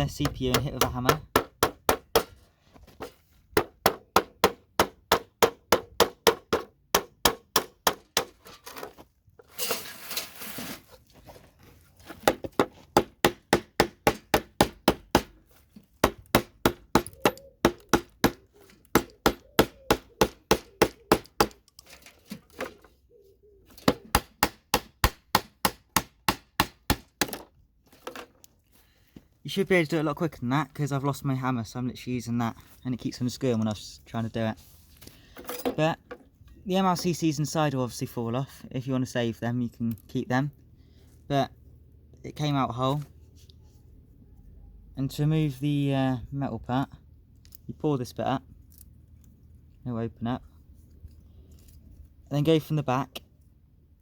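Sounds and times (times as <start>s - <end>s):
metal scraping: 8.4s - 12.2s.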